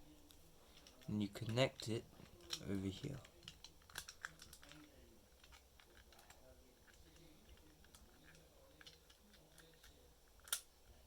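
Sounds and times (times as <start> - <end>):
plastic pieces clicking together: 0.7 - 11.0.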